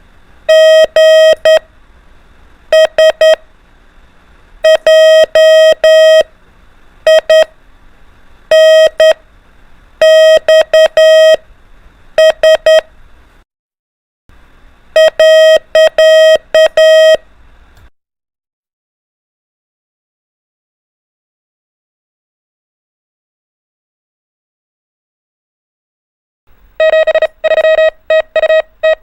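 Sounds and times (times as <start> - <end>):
morse code beeps: 0.5 - 1.6, 2.7 - 3.4, 4.6 - 6.3, 7.1 - 7.5, 8.5 - 9.2, 10.0 - 11.4, 12.2 - 12.8, 15.0 - 17.2, 26.8 - 29.0.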